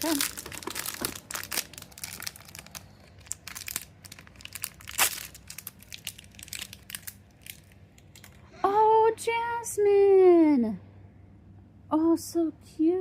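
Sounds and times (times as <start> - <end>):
packaging crinkling and tearing: 0.0 - 8.4.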